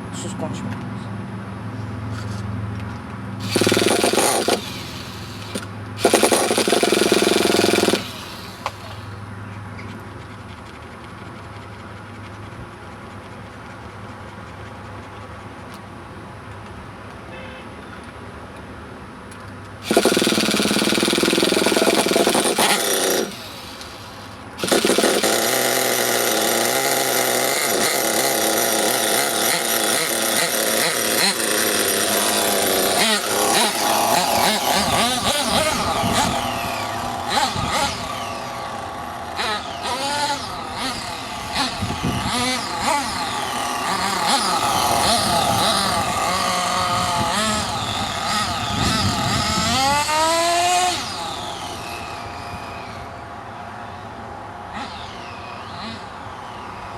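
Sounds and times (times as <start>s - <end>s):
small engine revving: 3.4s - 9.2s, 19.8s - 53.3s, 54.7s - 56.6s.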